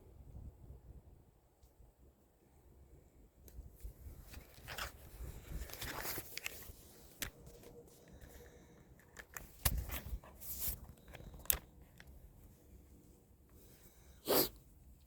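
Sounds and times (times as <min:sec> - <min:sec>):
phone handling rustling: 0:04.3 - 0:12.2.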